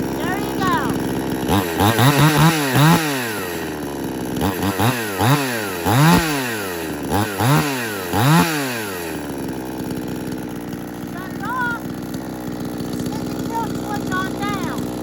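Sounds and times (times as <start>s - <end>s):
chainsaw engine revving and idling: 0.0s - 15.0s.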